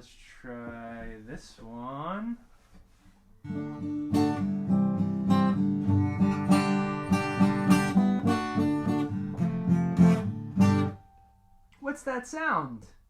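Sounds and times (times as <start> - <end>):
acoustic guitar strumming: 3.4 - 11.8.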